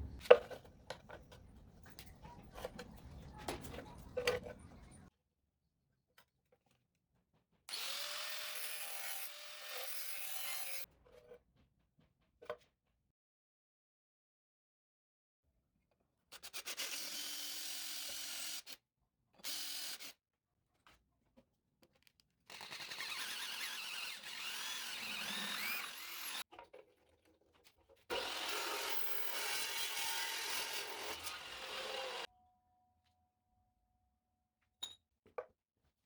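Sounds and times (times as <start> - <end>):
tool cutting steel: 7.7 - 10.9, 22.5 - 26.4, 28.1 - 32.3.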